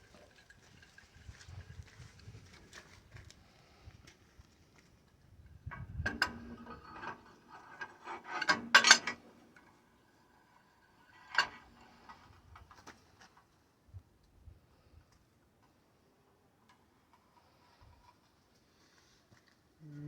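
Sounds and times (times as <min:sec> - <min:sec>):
steel parts scraping and clanking: 0:06.0 - 0:12.4.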